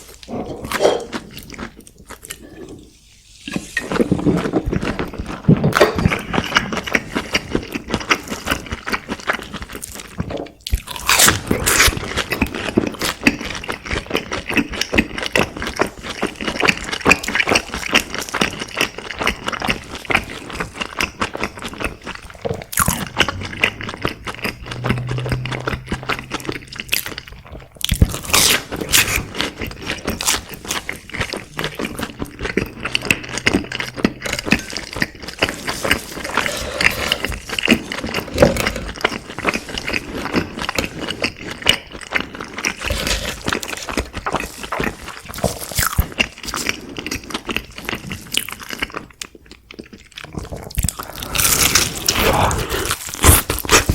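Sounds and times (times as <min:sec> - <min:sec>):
crunchy chewing of fried food: 0:00.0 - 0:02.9, 0:03.6 - 0:53.9
low hum: 0:22.7 - 0:28.2, 0:31.2 - 0:37.5.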